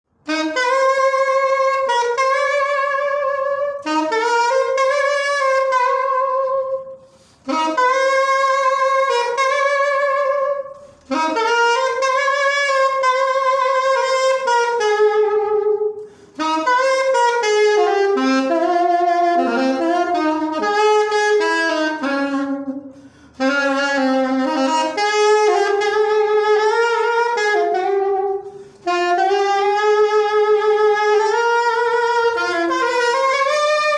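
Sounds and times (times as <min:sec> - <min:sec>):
solo saxophone melody: 0:00.1 - 0:33.9.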